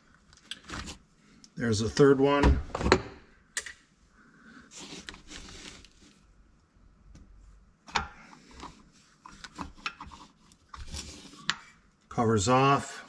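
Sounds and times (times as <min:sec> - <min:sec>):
rustling: 0:04.7 - 0:06.3.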